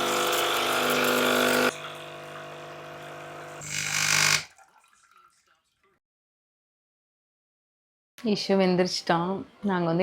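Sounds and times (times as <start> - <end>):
espresso machine pump buzzing: 0.0 - 4.5.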